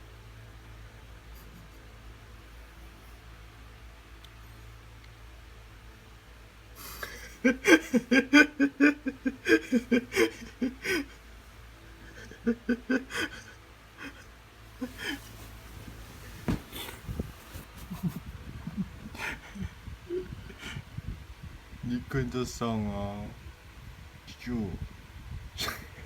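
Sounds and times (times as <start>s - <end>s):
person laughing: 7.0s - 11.2s, 12.0s - 14.2s, 14.8s - 15.5s, 16.1s - 20.8s
low thuds: 14.9s - 19.1s.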